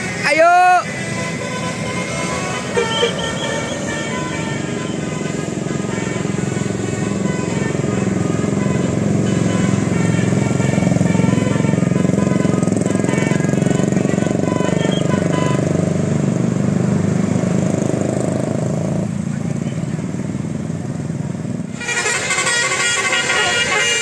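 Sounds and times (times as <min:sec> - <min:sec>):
multi-tone bus air horn tune: 0:00.0 - 0:15.8, 0:21.7 - 0:24.0
diesel engine running: 0:00.0 - 0:17.7.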